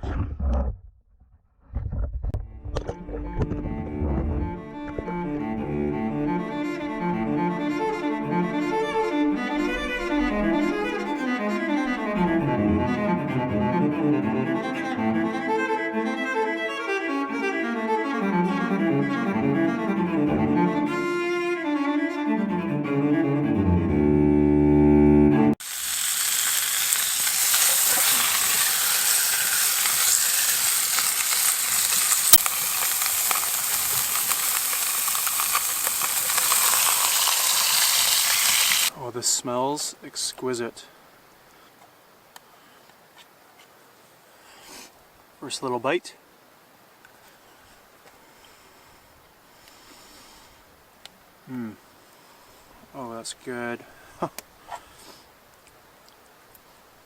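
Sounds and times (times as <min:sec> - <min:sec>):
solo cello music: 0:02.4 - 0:25.6
fish sizzling in a pan: 0:25.6 - 0:38.9.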